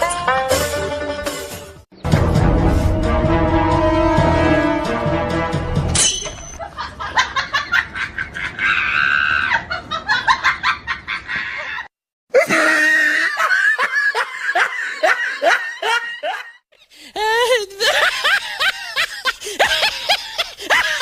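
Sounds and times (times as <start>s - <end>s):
person laughing hard: 6.6s - 16.6s, 17.2s - 21.0s.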